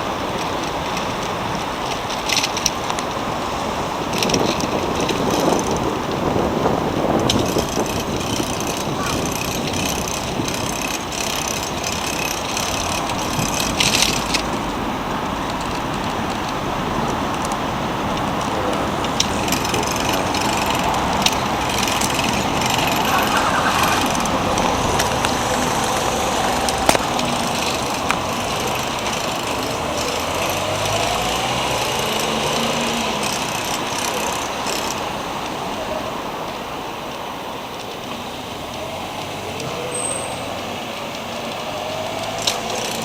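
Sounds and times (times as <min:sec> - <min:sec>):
road traffic rumble: 0:00.0 - 0:43.0
sharp clicks: 0:07.2 - 0:35.6, 0:38.7 - 0:43.0.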